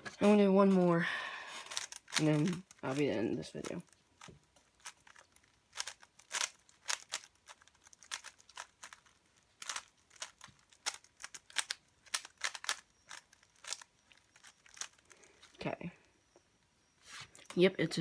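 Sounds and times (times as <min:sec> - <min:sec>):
puzzle cube clicking as turned: 0:01.6 - 0:03.1, 0:03.7 - 0:15.6.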